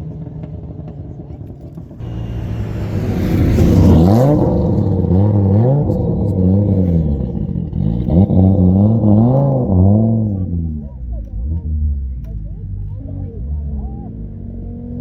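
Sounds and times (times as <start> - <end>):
engine crack: 2.0 - 9.7
race car engine revving: 2.0 - 15.0.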